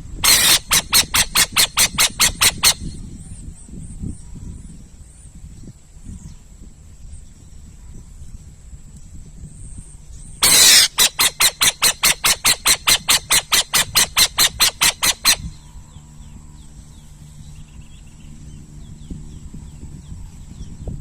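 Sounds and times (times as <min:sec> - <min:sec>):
owl screeching: 0:00.2 - 0:03.0, 0:10.4 - 0:15.5.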